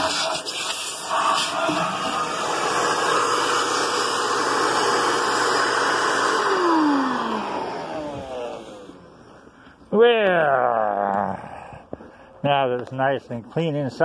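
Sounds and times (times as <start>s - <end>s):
vacuum cleaner running: 0.0s - 9.5s.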